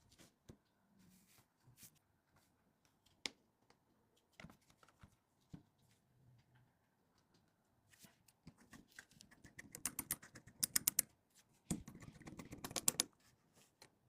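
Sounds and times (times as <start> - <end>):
small clicks and taps on a phone: 11.7 - 13.1.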